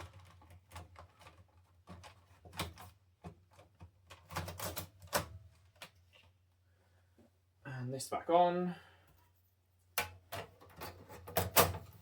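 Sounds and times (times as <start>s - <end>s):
plastic and metal parts clicking: 0.0s - 6.0s.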